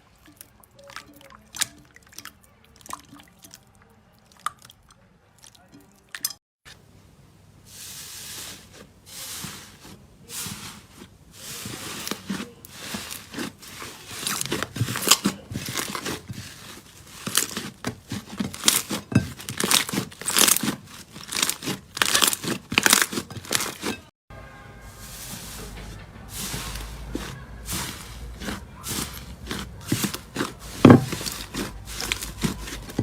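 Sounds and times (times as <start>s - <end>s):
slime crackling and popping: 11.5s - 23.9s.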